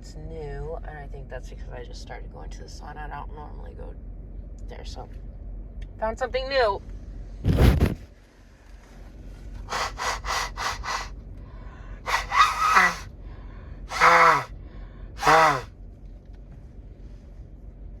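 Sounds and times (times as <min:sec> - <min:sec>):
woman sneezing: 0:09.7 - 0:11.1, 0:12.1 - 0:13.1, 0:13.9 - 0:14.5, 0:15.2 - 0:15.7
woman's quick in-breaths: 0:09.7 - 0:15.7.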